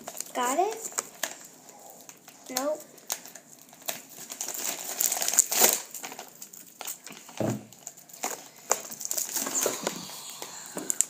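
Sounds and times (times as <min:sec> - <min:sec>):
crinkling and crackling material: 0:00.0 - 0:11.0
dull thud: 0:07.4 - 0:07.7.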